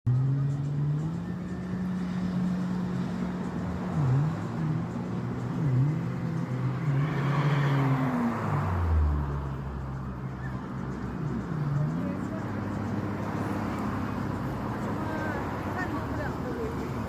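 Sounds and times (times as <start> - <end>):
car passing: 0.2 - 17.0.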